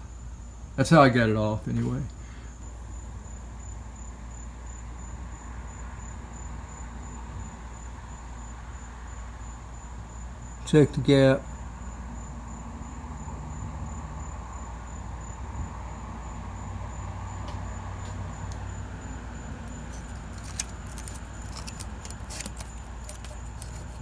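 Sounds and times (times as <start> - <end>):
metallic clicks and rattles: 19.6 - 24.0.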